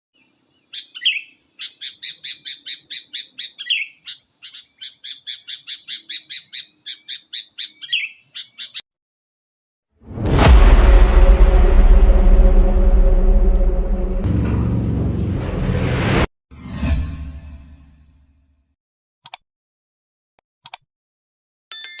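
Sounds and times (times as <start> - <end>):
loud rushing boom: 10.0 - 17.6.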